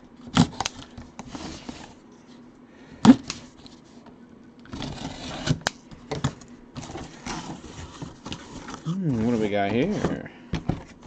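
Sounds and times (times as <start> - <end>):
cardboard scraping and rustling: 0.2 - 2.0, 4.7 - 5.6, 6.8 - 11.0.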